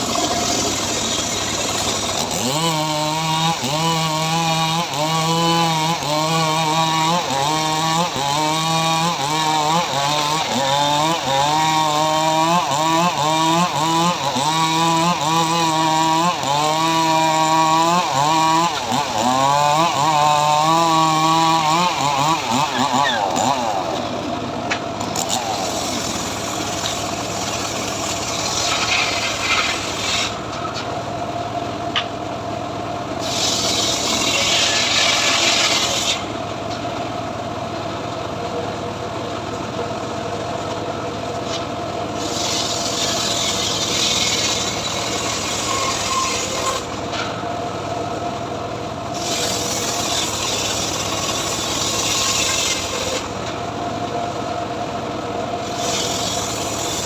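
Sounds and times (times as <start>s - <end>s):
saw rasping through wood: 0.0s - 24.4s, 25.0s - 30.5s, 33.2s - 36.3s, 41.5s - 47.4s, 49.1s - 53.6s, 55.6s - 57.0s
engine-driven saw running: 0.0s - 57.0s.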